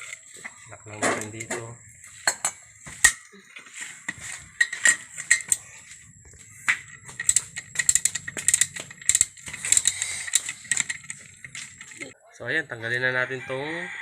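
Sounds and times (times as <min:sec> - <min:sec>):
hand tools clinking on metal: 0:04.4 - 0:12.2.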